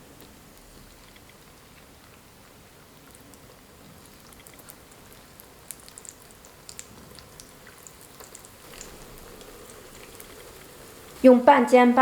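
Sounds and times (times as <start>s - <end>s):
faint frying sizzle: 0.0s - 12.0s
oil crackling and popping: 3.0s - 11.2s.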